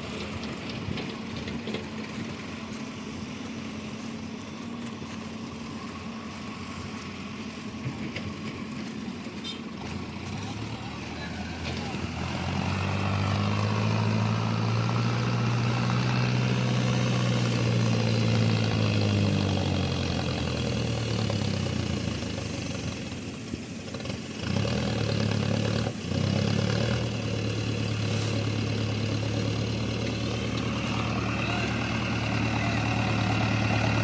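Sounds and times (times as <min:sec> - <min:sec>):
heavy machinery diesel engine: 0:00.0 - 0:34.0.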